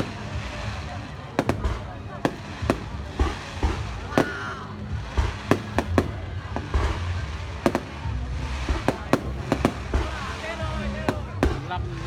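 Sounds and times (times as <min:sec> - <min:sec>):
fireworks bangs: 0:00.0 - 0:12.0.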